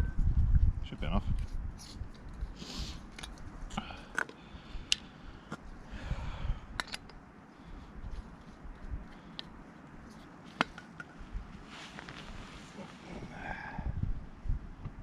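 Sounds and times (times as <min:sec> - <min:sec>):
clicks of camping kit handling: 0:06.8 - 0:07.2, 0:08.7 - 0:11.2
hissy rustles: 0:11.4 - 0:13.4.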